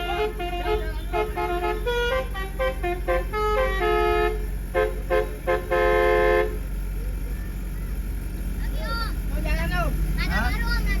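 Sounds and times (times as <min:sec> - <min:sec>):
multi-tone bus horn playing a tune: 0:00.0 - 0:06.8.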